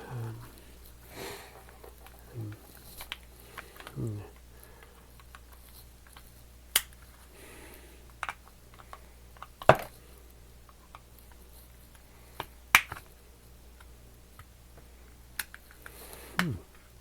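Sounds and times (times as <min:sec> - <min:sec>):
plastic case clicks and snaps: 0:06.1 - 0:07.1, 0:08.2 - 0:09.9, 0:12.4 - 0:13.1.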